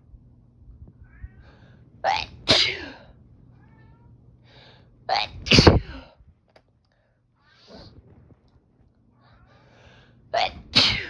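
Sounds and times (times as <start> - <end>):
cat meowing faintly: 1.0 - 1.7, 3.5 - 4.2
person sneezing: 2.1 - 3.0, 5.4 - 6.1, 10.4 - 11.0.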